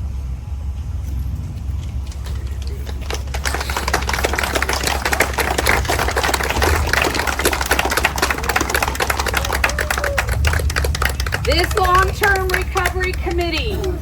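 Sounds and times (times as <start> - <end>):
low steady rumble: 0.0 - 14.0
crowd applauding: 2.0 - 14.0.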